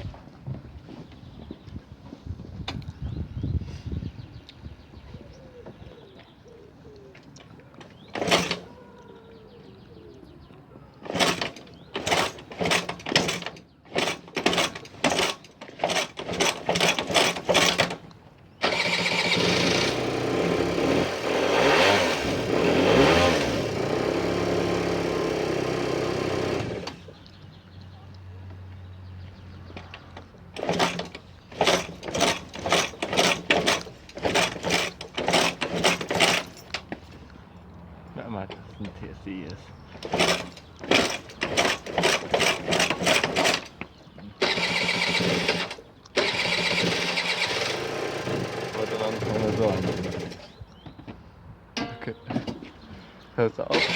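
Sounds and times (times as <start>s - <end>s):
scooter engine running: 18.6s - 27.2s, 30.6s - 36.6s, 39.9s - 50.6s.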